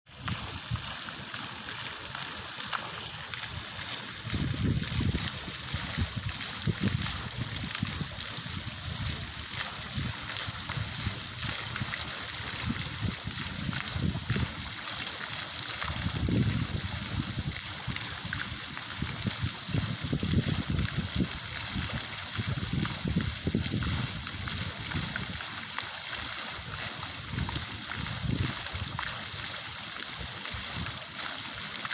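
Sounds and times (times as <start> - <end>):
fountain water splashing: 0.1 - 31.9.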